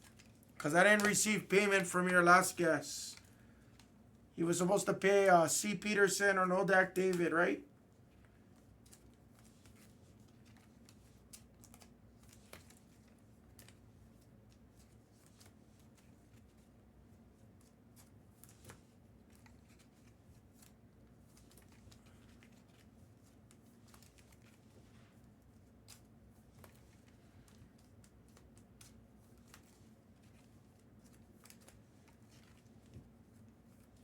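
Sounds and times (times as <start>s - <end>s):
trading cards clicking and rustling: 0.0s - 3.9s, 4.5s - 7.6s.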